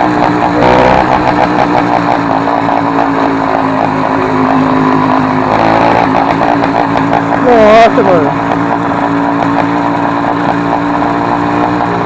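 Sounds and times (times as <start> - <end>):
two-stroke engine running loud: 0.0 - 12.0.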